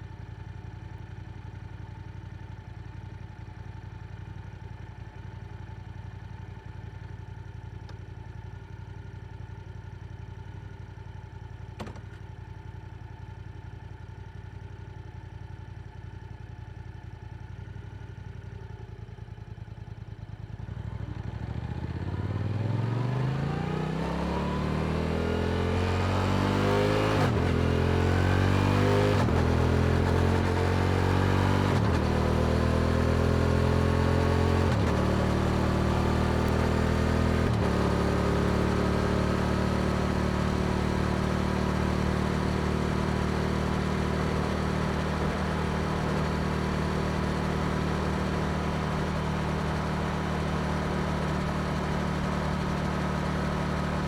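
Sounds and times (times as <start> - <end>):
motorcycle engine revving: 21.6 - 54.0.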